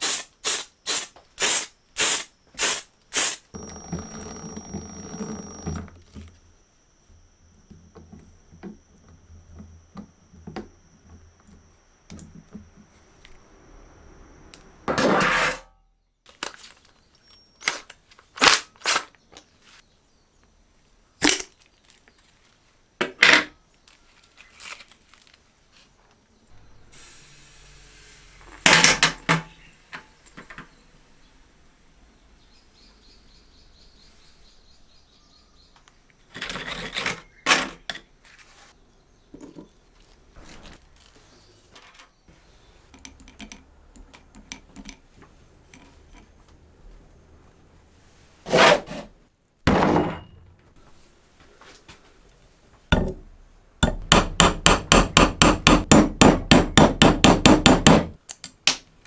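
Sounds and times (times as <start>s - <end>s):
metal parts clicking and knocking: 42.9s - 46.3s, 58.2s - 58.8s.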